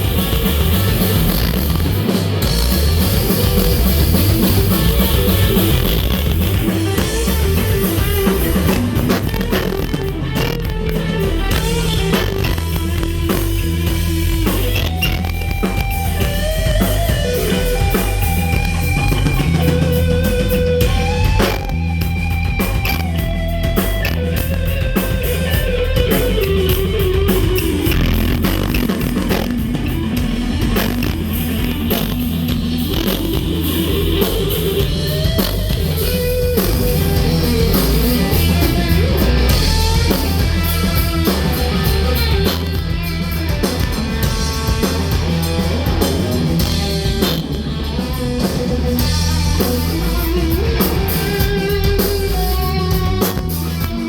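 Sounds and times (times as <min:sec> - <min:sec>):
bass guitar: 0:00.0 - 0:54.0
drum kit: 0:00.0 - 0:54.0
electric guitar bending notes: 0:00.0 - 0:54.0.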